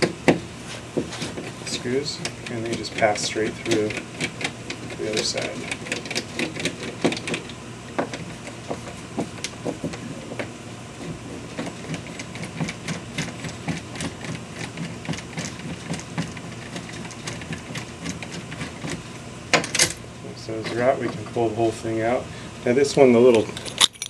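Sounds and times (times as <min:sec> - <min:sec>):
screws clicking and scraping: 0:02.2 - 0:07.5, 0:23.6 - 0:24.0.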